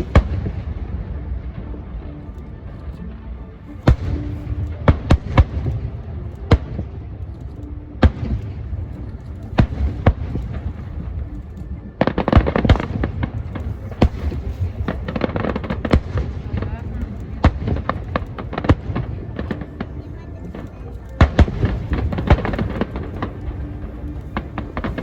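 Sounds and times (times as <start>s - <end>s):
fireworks bangs: 0.0s - 0.8s, 21.2s - 25.0s
fireworks crackling: 0.0s - 25.0s.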